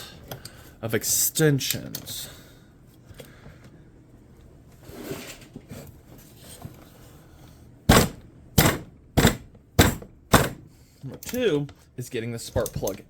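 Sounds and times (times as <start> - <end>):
loud sharp knocks: 7.9 - 10.6.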